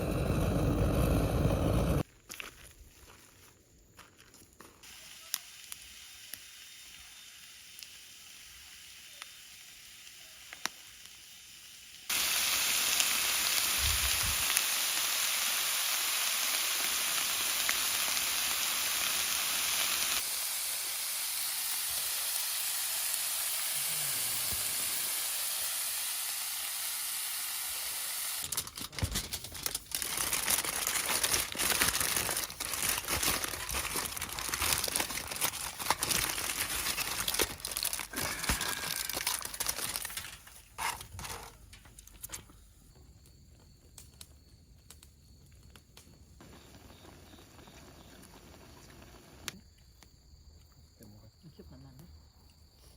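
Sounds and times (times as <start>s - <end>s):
crackling and crinkling: 2.0s - 5.8s, 28.4s - 50.1s
food frying sizzle: 4.8s - 28.6s, 29.9s - 40.4s.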